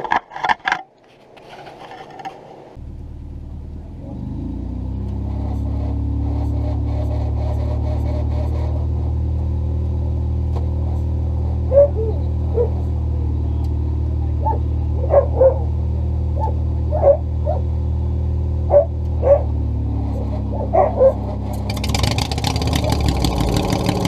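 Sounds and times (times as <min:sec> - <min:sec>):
rough engine: 0:00.0 - 0:24.0
dog barking: 0:11.6 - 0:12.9, 0:14.4 - 0:15.8, 0:16.4 - 0:17.7, 0:18.7 - 0:21.4.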